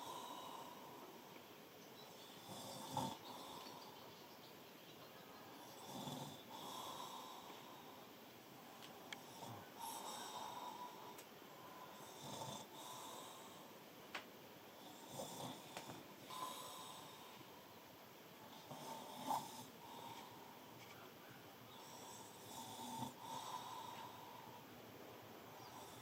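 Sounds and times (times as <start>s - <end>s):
man snoring: 2.4s - 3.6s, 5.8s - 7.8s, 11.9s - 13.6s, 14.8s - 17.3s, 18.6s - 20.2s, 21.8s - 24.4s.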